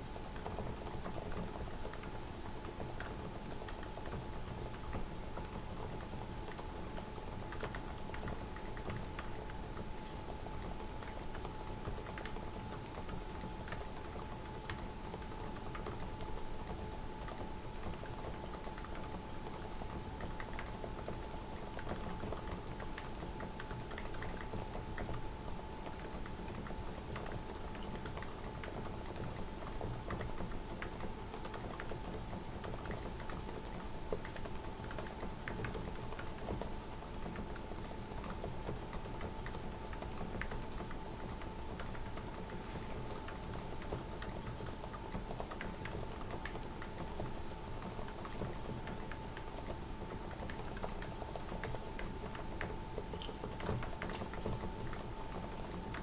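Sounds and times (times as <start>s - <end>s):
faint steady hum: 0.0s - 56.0s
typing on mechanical keyboard: 0.3s - 56.0s.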